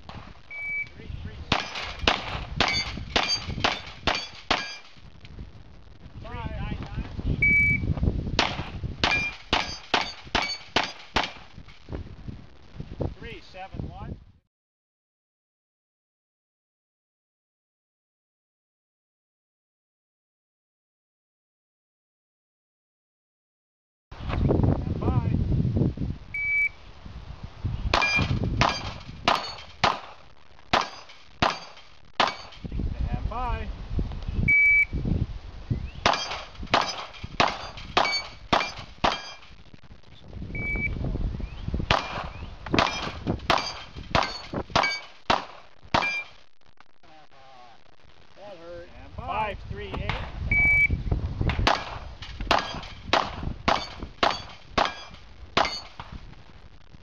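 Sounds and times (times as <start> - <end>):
pistol shots: 1.5 - 4.8, 8.4 - 11.5, 27.9 - 32.6, 36.0 - 39.4, 41.9 - 46.4, 51.6 - 55.9
steel targets ringing: 2.6 - 4.9, 9.0 - 11.0, 28.0 - 29.7, 37.6 - 39.4, 43.6 - 45.2, 46.0 - 46.3, 53.7 - 56.0
shot timer beep: 7.4 - 7.8, 26.4 - 26.8, 50.5 - 51.0.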